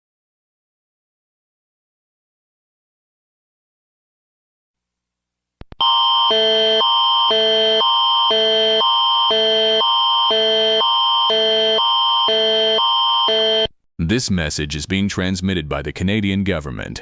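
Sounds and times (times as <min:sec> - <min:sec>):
alert tone with alternating chords: 0:05.8 - 0:13.7.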